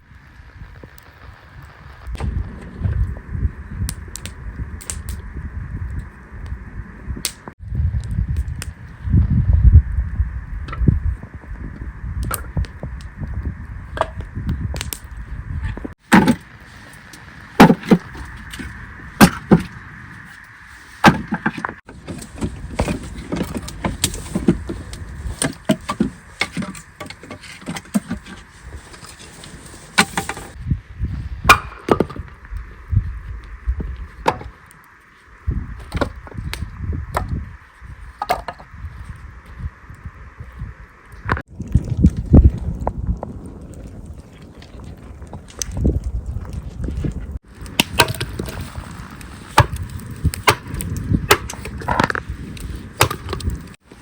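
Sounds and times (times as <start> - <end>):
wind rumble on microphone: 0.0 - 54.0
sharp knocks and cracks: 17.6 - 18.6, 19.2 - 19.7, 21.0 - 28.4, 31.4 - 32.3, 49.5 - 53.6.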